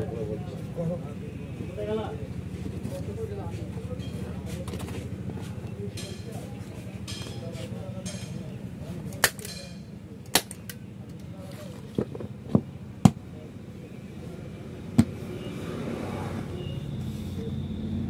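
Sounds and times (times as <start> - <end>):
staple gun snapping: 10.3 - 10.8.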